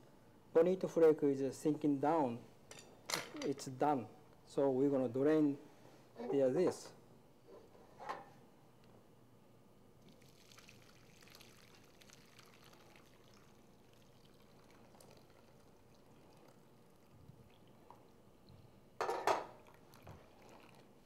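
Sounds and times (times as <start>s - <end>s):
faint trickle of liquid: 10.0s - 18.2s, 19.5s - 21.0s.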